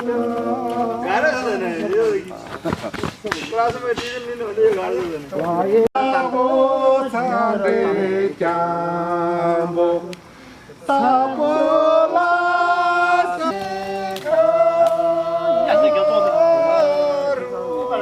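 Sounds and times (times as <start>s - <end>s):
voices singing long notes: 0.0s - 1.9s, 5.9s - 18.0s.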